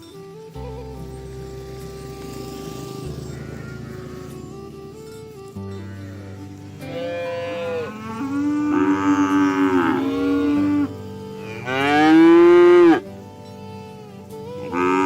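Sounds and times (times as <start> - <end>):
cows mooing: 1.9 - 13.0, 14.6 - 15.0.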